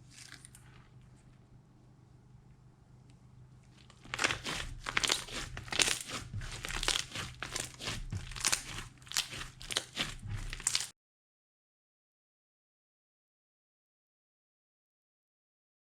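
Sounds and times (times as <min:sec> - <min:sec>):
slime squelching crunchily: 0:00.0 - 0:01.2, 0:03.7 - 0:10.9.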